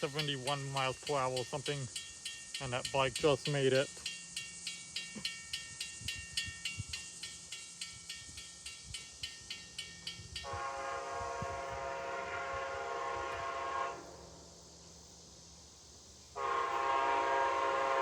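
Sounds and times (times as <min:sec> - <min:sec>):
locomotive air horn blast: 0:10.4 - 0:14.2, 0:16.4 - 0:18.0.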